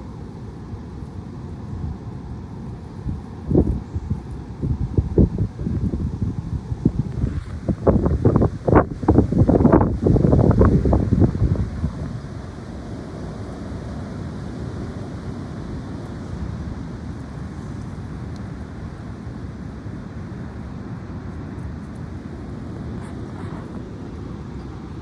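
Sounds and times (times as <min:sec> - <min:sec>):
high wind blowing: 0:00.0 - 0:25.0
wind buffeting microphone: 0:00.0 - 0:25.0.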